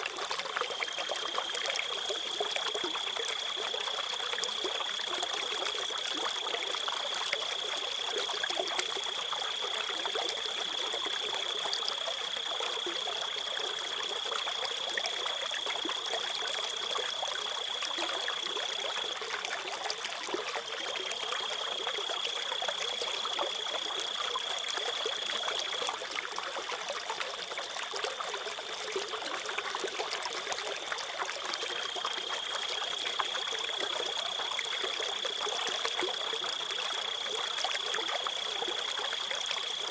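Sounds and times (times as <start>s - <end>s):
stream water trickling: 0.0s - 39.9s
crickets trilling: 20.7s - 26.0s, 31.6s - 39.9s.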